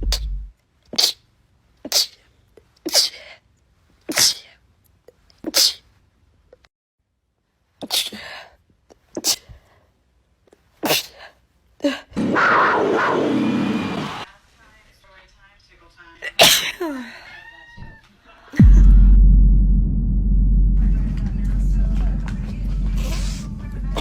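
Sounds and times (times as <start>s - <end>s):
person sneezing: 1.0s - 1.2s, 1.9s - 2.2s, 2.9s - 3.3s, 4.1s - 4.5s, 5.5s - 5.8s, 7.8s - 8.4s, 9.2s - 9.6s, 10.8s - 11.3s, 16.4s - 17.0s.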